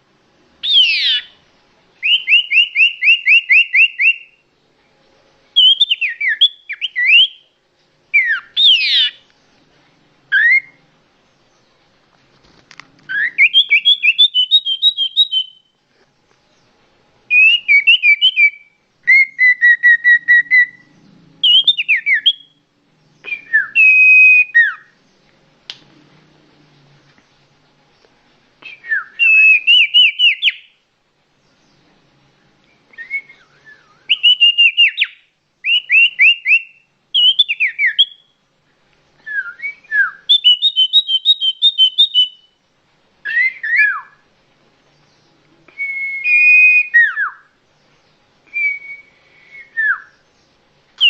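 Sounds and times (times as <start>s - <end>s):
bird whistled calls: 0.6s - 1.4s, 2.0s - 4.4s, 5.6s - 7.4s, 8.1s - 9.2s, 10.3s - 10.8s, 13.1s - 15.7s, 17.3s - 22.6s, 23.2s - 25.0s, 28.6s - 30.8s, 32.7s - 38.4s, 39.2s - 42.6s, 43.2s - 44.2s, 45.7s - 47.6s, 48.5s - 50.2s.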